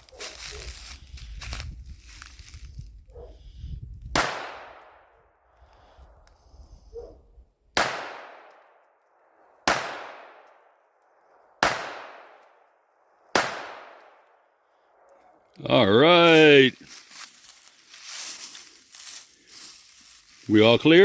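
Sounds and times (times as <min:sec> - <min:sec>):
pistol shots echoing: 0:04.2 - 0:05.1, 0:07.8 - 0:08.8, 0:09.6 - 0:10.8, 0:11.6 - 0:12.7, 0:13.3 - 0:14.2.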